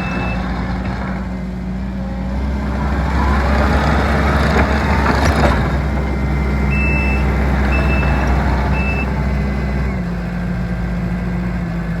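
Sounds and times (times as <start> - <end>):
reversing alarm beeping: 0.0 - 0.6, 6.6 - 9.2
diesel engine running: 0.0 - 12.0.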